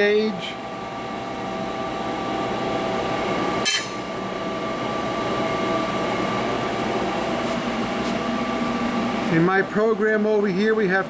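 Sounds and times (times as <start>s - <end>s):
sharp metallic clink: 3.6s - 4.0s.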